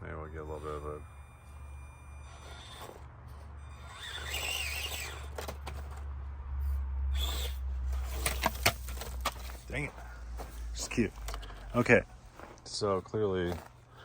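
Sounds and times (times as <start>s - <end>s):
small electric motor whirring: 0.0s - 6.0s, 6.6s - 8.7s
toy truck clacking on concrete: 2.2s - 6.1s, 7.2s - 9.6s.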